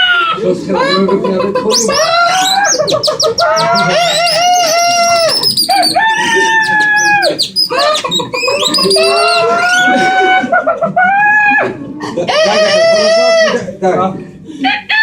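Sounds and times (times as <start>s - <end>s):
man imitating bird calls: 1.7s - 10.1s.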